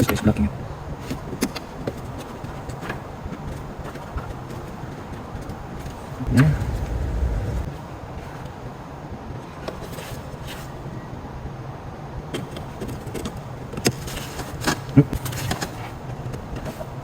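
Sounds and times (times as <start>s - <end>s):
steady low hum: 6.2s - 7.7s.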